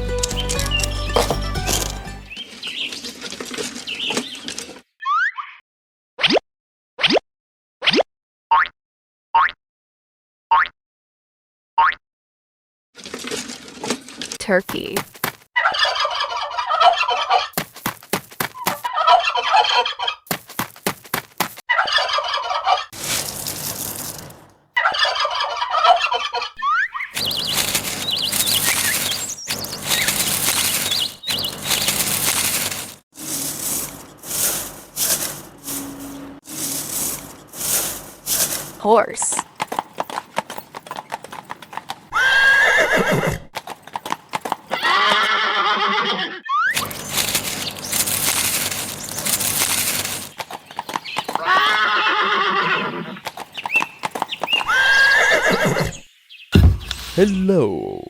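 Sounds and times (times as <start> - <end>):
hoof knocks: 0.0 - 2.4
high bird chirps: 26.6 - 32.5
bird wings flapping: 26.9 - 39.0, 46.8 - 51.6
horse neighing: 42.1 - 43.5, 44.7 - 46.8, 51.3 - 53.3, 54.6 - 56.1.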